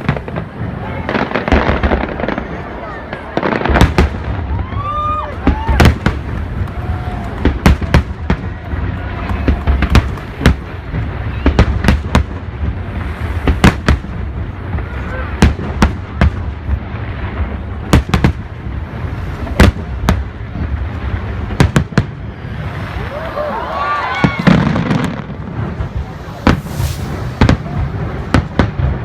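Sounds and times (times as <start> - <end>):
continuous low rumble: 0.0 - 29.0
faint crowd voices: 0.0 - 29.0
firework shells bursting: 24.2 - 29.0.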